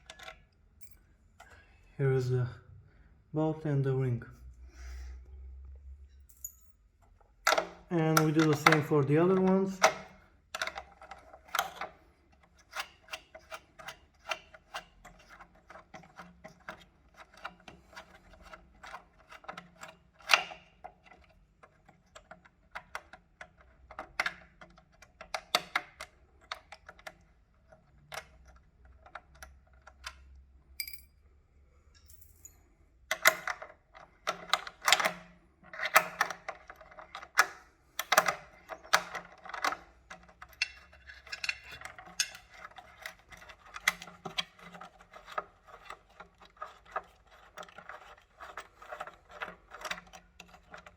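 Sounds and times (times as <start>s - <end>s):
wrench clicking on bolts: 40.5s - 42.4s.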